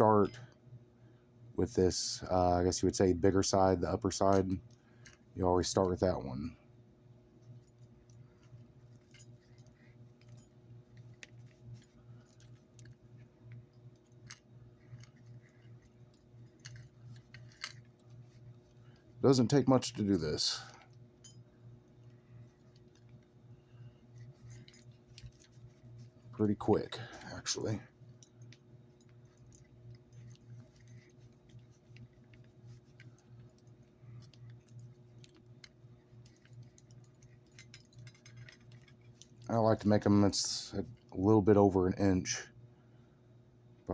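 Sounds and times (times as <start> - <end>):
low steady hum: 0.0 - 43.9
cord rustling and clicking: 7.4 - 21.4, 24.1 - 40.0.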